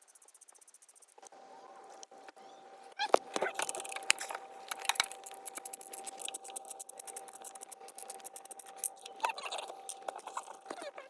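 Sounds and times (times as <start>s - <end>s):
hand tools clicking on metal: 3.3s - 10.7s.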